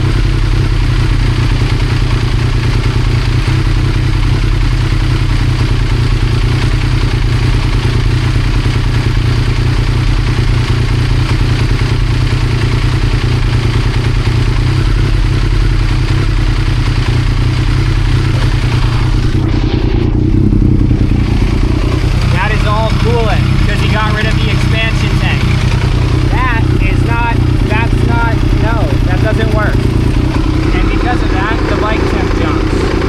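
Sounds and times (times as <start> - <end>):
motorcycle engine idling: 0.0 - 33.0.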